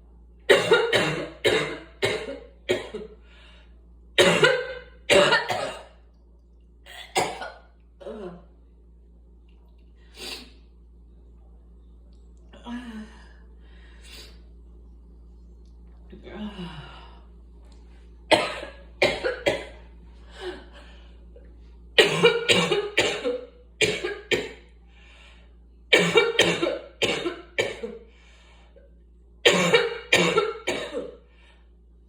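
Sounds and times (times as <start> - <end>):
person coughing: 0.5 - 3.1, 4.2 - 6.0, 6.9 - 8.5, 18.3 - 19.8, 22.0 - 24.6, 25.9 - 28.0, 29.4 - 31.2.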